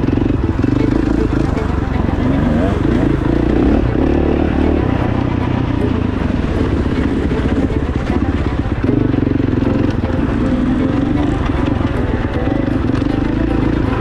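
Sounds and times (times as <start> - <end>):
dirt bike engine revving: 0.0 - 14.0.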